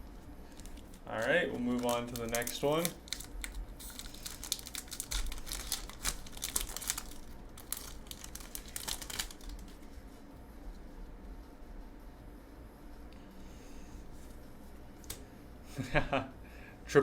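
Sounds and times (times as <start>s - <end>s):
foil wrapper tearing and crinkling: 0.5s - 9.8s.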